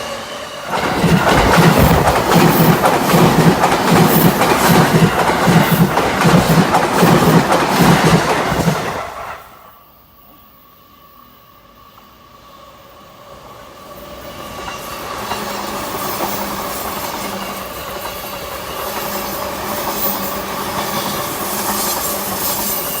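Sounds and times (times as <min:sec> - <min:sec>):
electric train passing: 0:00.0 - 0:23.0.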